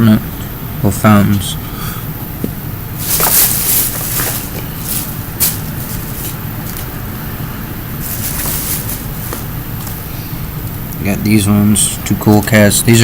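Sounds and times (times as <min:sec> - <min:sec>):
steady low hum: 0:00.0 - 0:13.0
fireworks packaging rustling: 0:03.0 - 0:07.0, 0:08.0 - 0:10.1
short crinkles: 0:03.0 - 0:07.1, 0:08.0 - 0:10.2.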